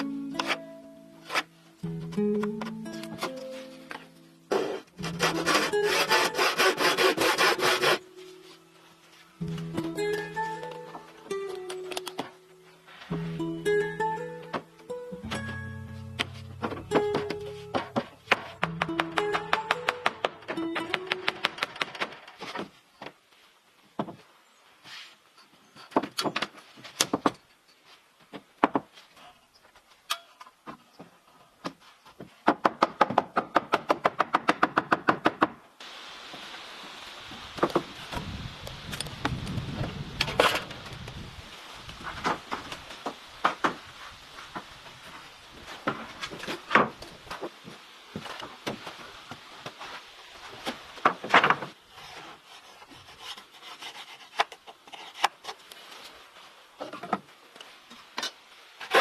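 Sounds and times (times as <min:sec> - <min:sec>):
rubbing on wood: 0:04.5 - 0:08.0
rasping on wood: 0:05.0 - 0:08.0
wooden knocks: 0:16.6 - 0:22.1.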